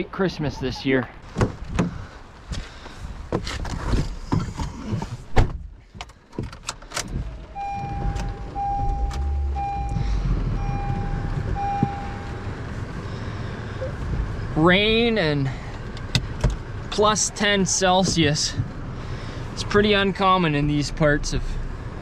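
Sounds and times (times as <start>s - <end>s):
vehicle engine running: 7.2s - 22.0s
repeating electronic beep: 7.6s - 12.4s.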